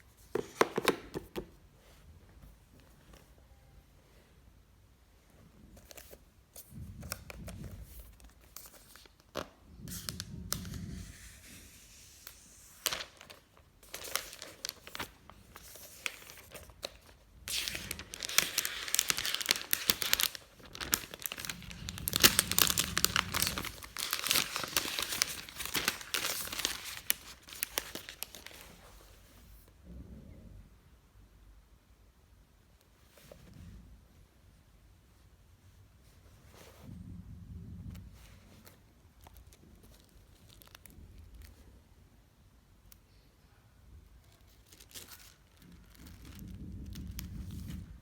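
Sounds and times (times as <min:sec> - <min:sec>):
packaging tearing and crinkling: 0:12.4 - 0:28.7.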